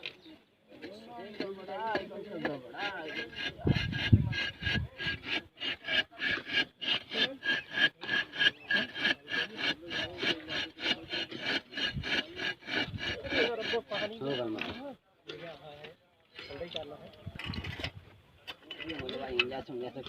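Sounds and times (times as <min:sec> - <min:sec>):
hand tool rasping strokes: 0:00.8 - 0:15.0.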